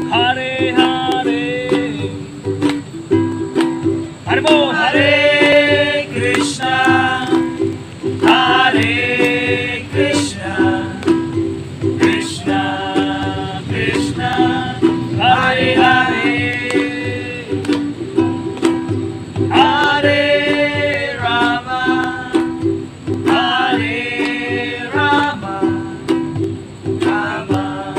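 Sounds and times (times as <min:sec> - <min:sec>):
strummed string accompaniment: 0:00.0 - 0:27.9
person chanting: 0:12.0 - 0:17.8.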